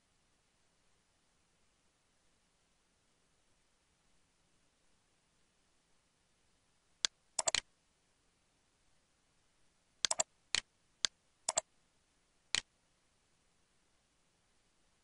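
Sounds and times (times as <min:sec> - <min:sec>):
computer mouse clicks: 0:07.0 - 0:07.7, 0:10.0 - 0:11.7.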